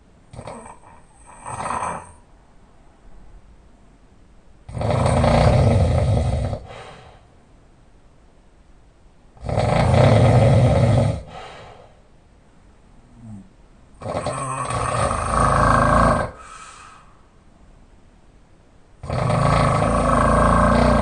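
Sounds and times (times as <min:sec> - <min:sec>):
person snoring: 0:00.3 - 0:02.2, 0:04.7 - 0:07.1, 0:09.4 - 0:11.6, 0:13.1 - 0:17.1, 0:19.0 - 0:21.0.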